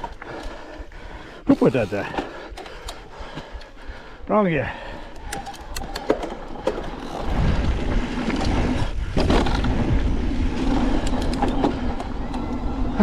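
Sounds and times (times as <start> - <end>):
bike clicks and rattles: 0.0 - 1.2, 2.0 - 3.8, 4.9 - 13.0
tyres and wind rumbling: 0.0 - 13.0.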